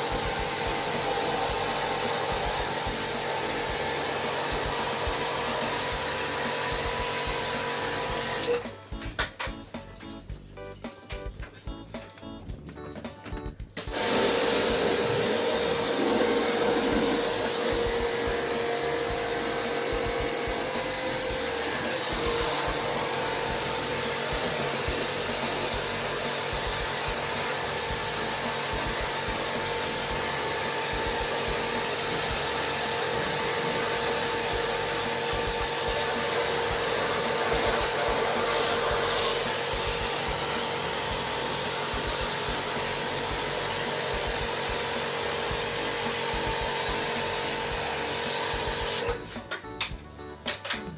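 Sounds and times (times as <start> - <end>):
small electric machine humming: 13.9 - 49.1.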